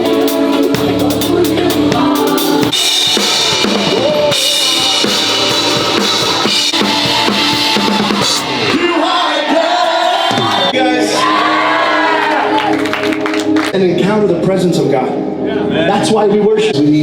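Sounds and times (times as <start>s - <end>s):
live band playing worship music: 0.0s - 10.6s
drum kit beat: 0.0s - 10.7s.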